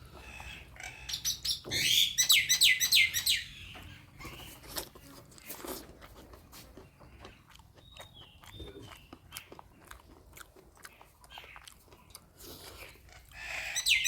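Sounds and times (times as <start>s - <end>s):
clicks of eating: 3.7s - 13.6s.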